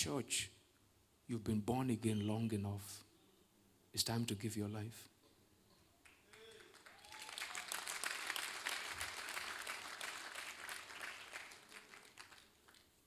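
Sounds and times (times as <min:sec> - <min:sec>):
congregation applauding: 0:06.0 - 0:13.0.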